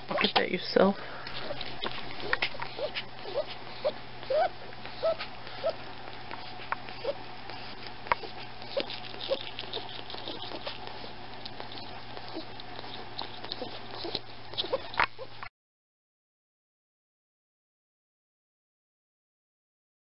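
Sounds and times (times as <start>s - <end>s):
small pet squeaky wheezing: 1.3s - 5.8s, 6.4s - 15.4s
faint scratchy rustling: 1.3s - 15.4s.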